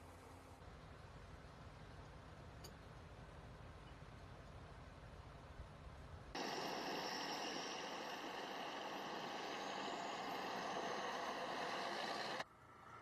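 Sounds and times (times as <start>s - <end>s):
large vehicle running: 6.4s - 12.5s.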